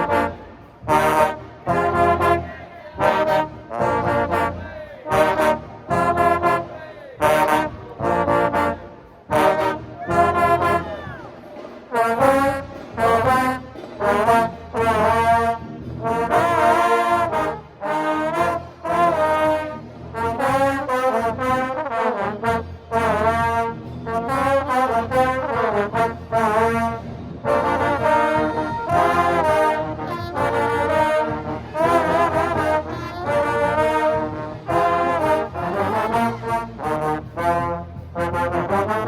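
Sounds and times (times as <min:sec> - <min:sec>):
trombones playing brass tune: 0:00.0 - 0:39.0.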